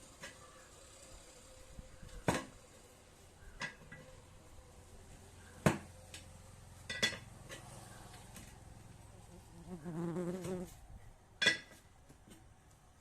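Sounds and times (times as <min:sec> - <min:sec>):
metal tools knocking and clanking: 0:06.9 - 0:07.6, 0:11.4 - 0:11.8.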